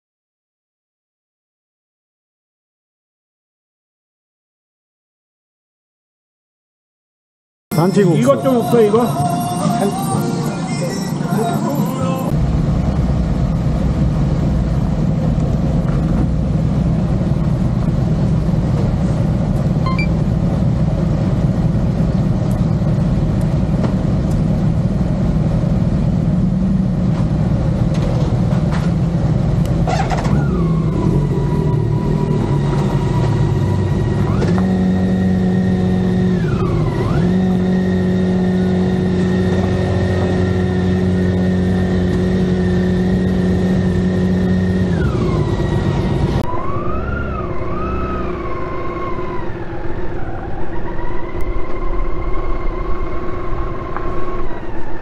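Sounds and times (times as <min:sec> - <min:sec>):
motorcycle engine: 0:12.3 - 0:55.0.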